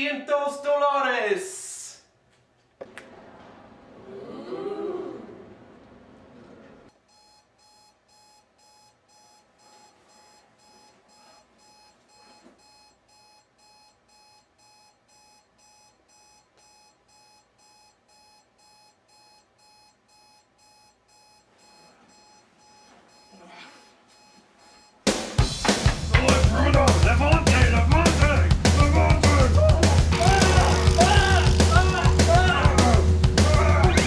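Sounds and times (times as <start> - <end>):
alarm clock beeping: 7.1 - 25.0, 30.1 - 33.2.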